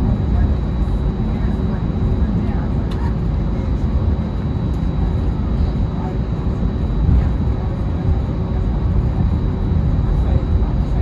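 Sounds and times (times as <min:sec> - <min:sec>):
jet engine cabin rumble: 0:00.0 - 0:11.0.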